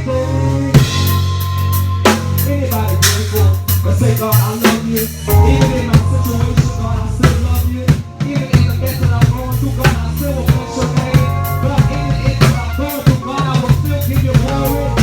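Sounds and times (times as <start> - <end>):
drum kit kick and snare: 5.3 - 7.4
electric bass: 5.3 - 8.0, 13.7 - 15.0
keyboard chords: 5.3 - 8.9.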